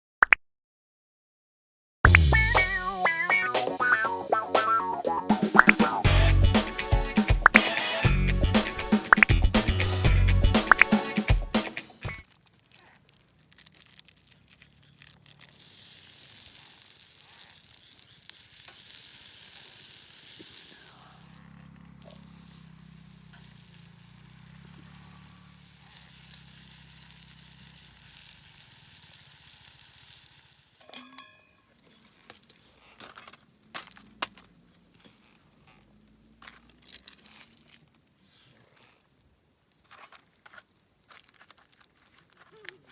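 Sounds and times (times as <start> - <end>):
food sizzling in frying pan: 14.6 - 21.6, 22.5 - 30.9.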